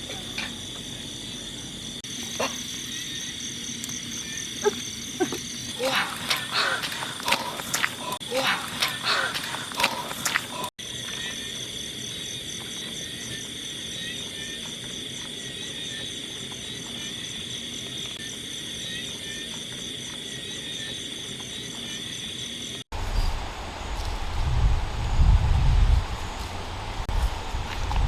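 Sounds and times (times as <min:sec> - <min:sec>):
pulsing insect chirps: 0:00.0 - 0:09.0
crickets trilling: 0:00.0 - 0:28.0.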